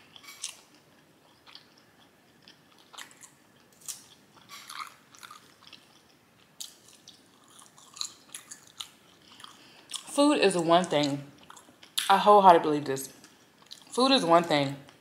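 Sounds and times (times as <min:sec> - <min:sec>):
person chewing food: 0:00.0 - 0:10.2, 0:10.8 - 0:12.1, 0:13.2 - 0:14.0
wet mouth smacks and crunches: 0:06.6 - 0:10.1.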